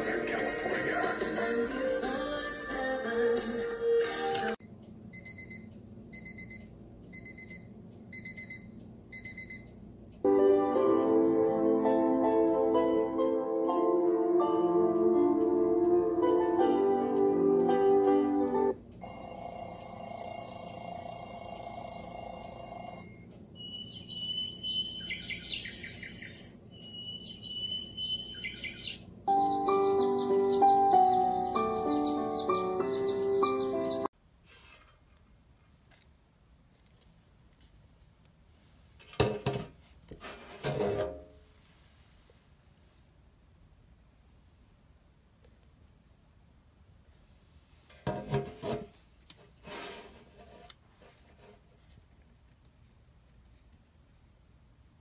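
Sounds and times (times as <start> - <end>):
radio music: 0.0 - 4.6
high-pitched alarm beeps: 5.2 - 9.7
alarm clock chime: 19.0 - 25.0, 26.8 - 33.3
recorded birdsong alarm: 23.5 - 34.1.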